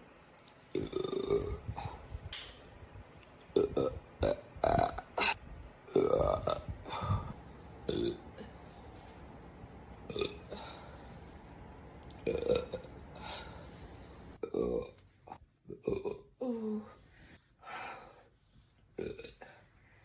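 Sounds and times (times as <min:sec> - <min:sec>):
woman burping: 0:03.6 - 0:06.8.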